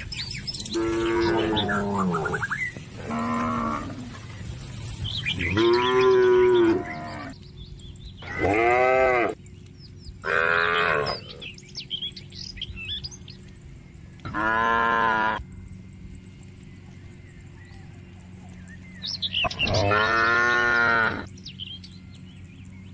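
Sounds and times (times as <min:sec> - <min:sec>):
birds chirping faintly: 0:00.0 - 0:22.9
cattle mooing: 0:00.6 - 0:04.2, 0:05.4 - 0:07.4, 0:08.2 - 0:09.4, 0:10.2 - 0:11.5, 0:14.2 - 0:15.4, 0:19.4 - 0:21.3.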